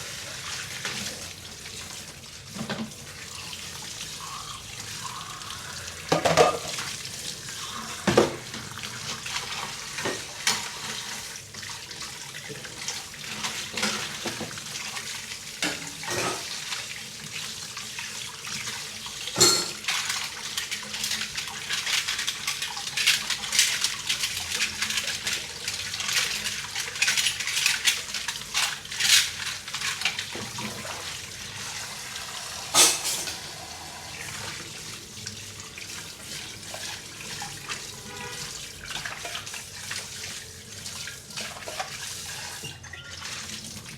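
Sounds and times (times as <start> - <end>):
running water: 0.0 - 43.9
dishes clinking and knocking: 6.1 - 6.8, 15.6 - 16.5, 19.4 - 19.8, 32.7 - 33.4.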